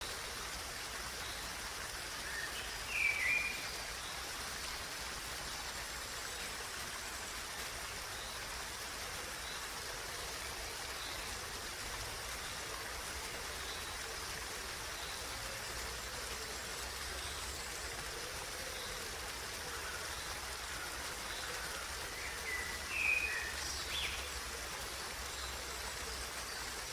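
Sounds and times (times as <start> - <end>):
flowing stream: 0.0 - 26.9.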